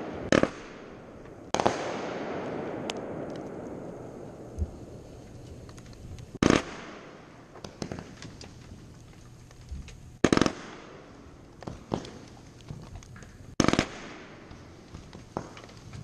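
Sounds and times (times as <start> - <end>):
fireworks popping and crackling: 0.0 - 16.0
fireworks volley of bangs: 0.0 - 16.0.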